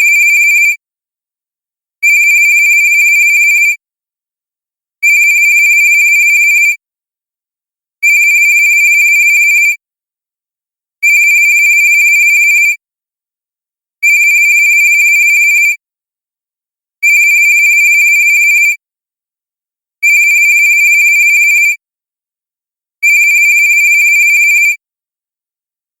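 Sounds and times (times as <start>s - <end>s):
cell phone ringtone: 0.0s - 0.8s, 23.2s - 24.7s.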